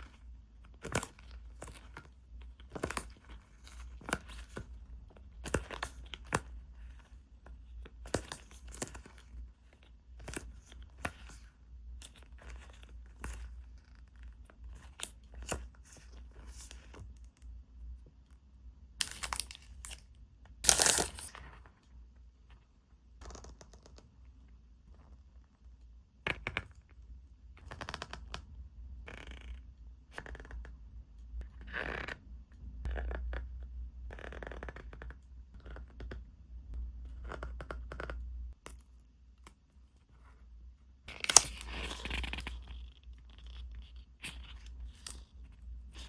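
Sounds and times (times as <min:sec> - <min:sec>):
packaging ripping and crinkling: 0:19.0 - 0:20.0, 0:20.6 - 0:21.4, 0:41.1 - 0:42.7.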